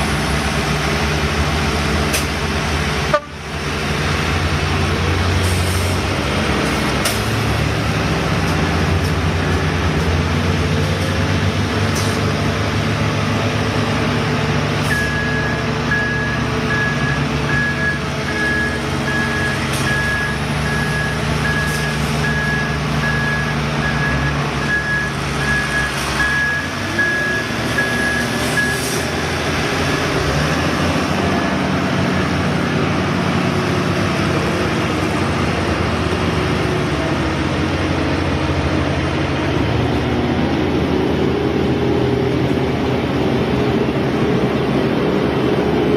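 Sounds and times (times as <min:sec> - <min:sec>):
heavy machine engine running: 0:00.0 - 0:45.9
reversing alarm beeping: 0:14.9 - 0:28.9.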